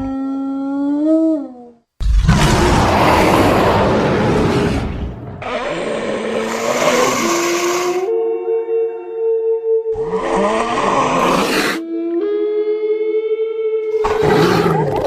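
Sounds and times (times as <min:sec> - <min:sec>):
harsh deep creature roar: 0:02.0 - 0:08.1, 0:14.0 - 0:15.0
rough snarling cry: 0:02.0 - 0:08.1, 0:10.0 - 0:11.8, 0:14.0 - 0:15.0.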